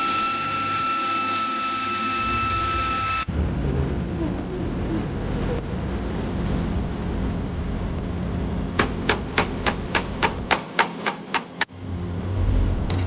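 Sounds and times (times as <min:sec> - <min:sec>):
workshop background noise: 0:08.8 - 0:11.7.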